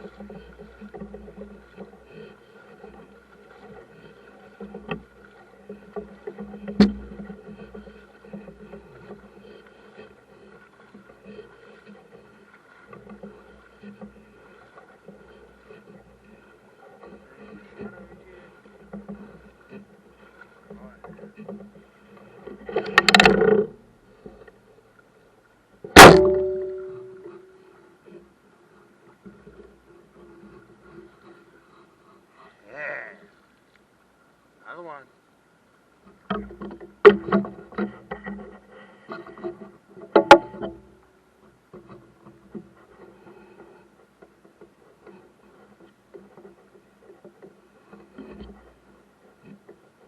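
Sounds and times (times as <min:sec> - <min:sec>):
boat motor humming: 0:00.0 - 0:50.0
knocks on boat: 0:05.9 - 0:07.3, 0:25.9 - 0:27.5, 0:36.3 - 0:38.2, 0:40.0 - 0:41.0
sharp metallic clang: 0:26.0 - 0:27.5.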